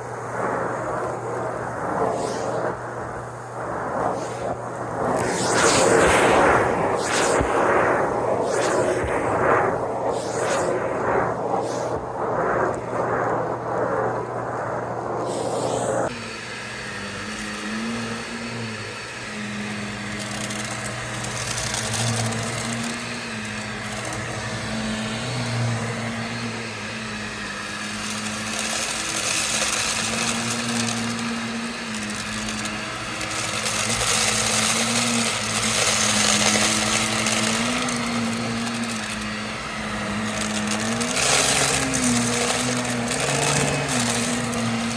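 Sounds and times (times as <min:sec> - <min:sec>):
vacuum cleaner running: 0:00.0 - 0:44.9.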